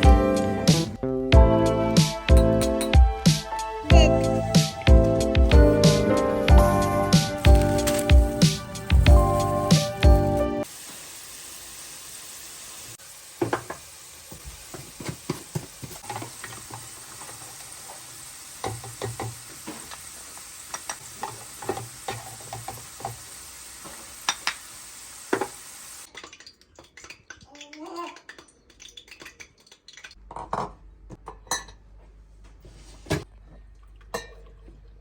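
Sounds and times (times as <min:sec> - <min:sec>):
food sizzling in a frying pan: 0:05.4 - 0:26.1.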